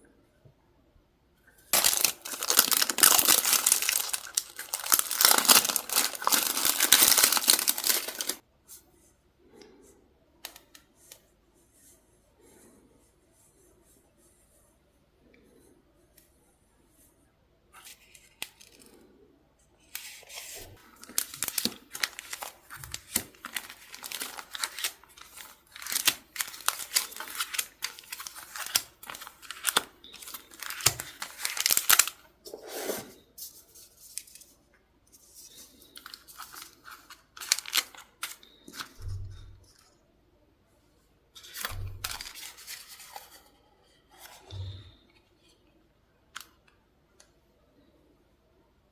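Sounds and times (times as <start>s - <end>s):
paper tearing and rustling: 1.8s - 8.4s, 20.0s - 32.2s, 36.2s - 39.0s, 41.4s - 43.3s.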